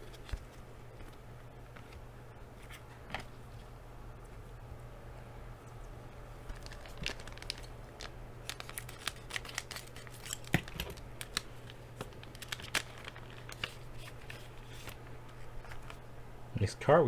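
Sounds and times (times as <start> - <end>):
foil wrapper crinkling: 6.4 - 16.0.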